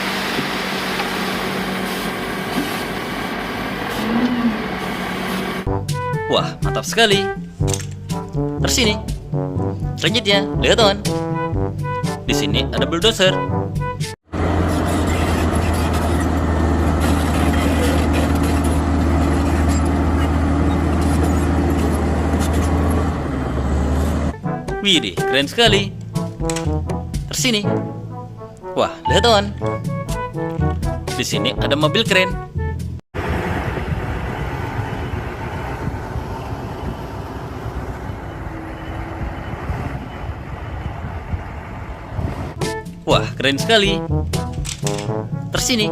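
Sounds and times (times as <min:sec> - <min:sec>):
bulldozer engine rumble: 0:00.0 - 0:06.3, 0:14.3 - 0:24.8, 0:33.2 - 0:43.0.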